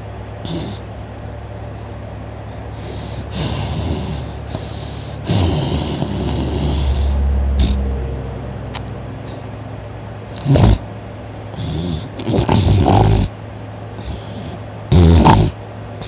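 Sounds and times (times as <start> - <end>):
person snoring: 0.4 - 0.8, 2.8 - 7.9, 10.3 - 10.8, 11.5 - 13.3, 14.0 - 15.6.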